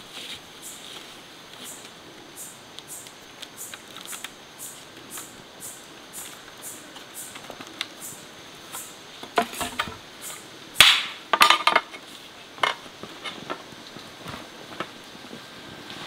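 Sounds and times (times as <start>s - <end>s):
hard objects knocking and clinking: 9.3s - 10.0s.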